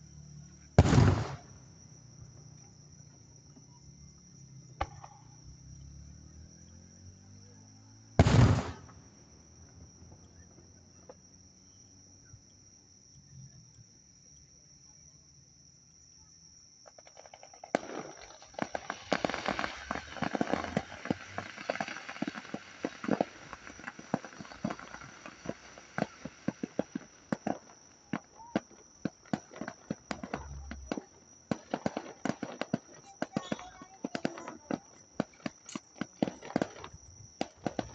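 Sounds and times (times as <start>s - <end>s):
fireworks crackling: 0.8s - 1.7s, 8.2s - 9.3s, 17.0s - 37.9s.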